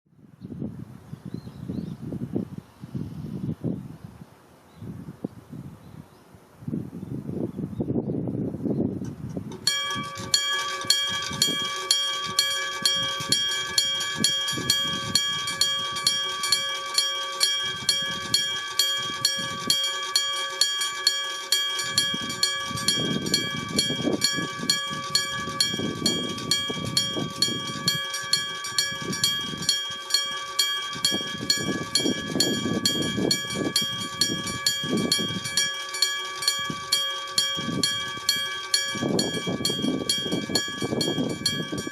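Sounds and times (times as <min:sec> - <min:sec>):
low rumbling: 0:09.4 - 0:41.9
level-crossing warning bell: 0:09.6 - 0:41.9.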